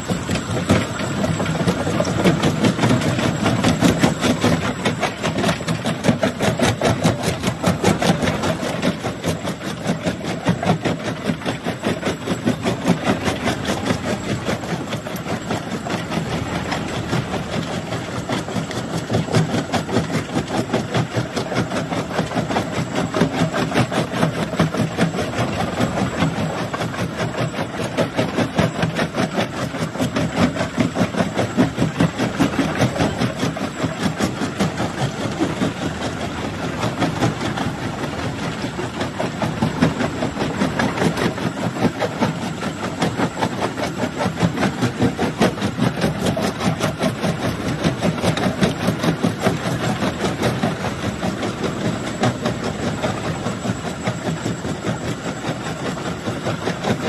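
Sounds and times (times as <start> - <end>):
rock crusher mechanical drone: 0.0 - 57.0.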